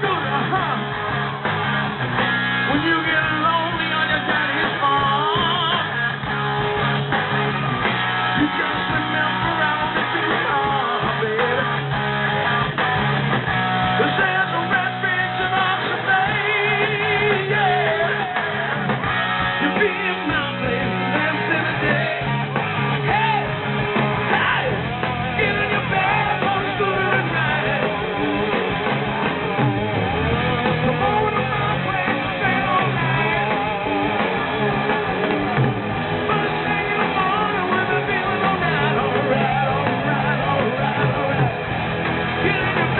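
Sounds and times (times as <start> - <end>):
man singing lead vocal: 0.0 - 1.0, 2.6 - 6.7, 8.4 - 12.7, 14.0 - 28.5, 30.4 - 34.2, 36.2 - 41.6, 42.3 - 42.9
electric guitar: 0.0 - 42.9
live rock band playing: 0.0 - 42.9.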